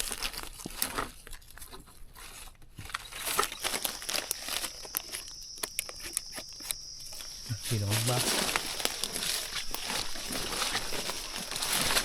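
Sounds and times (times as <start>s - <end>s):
dry leaves crunching: 0.0s - 12.0s.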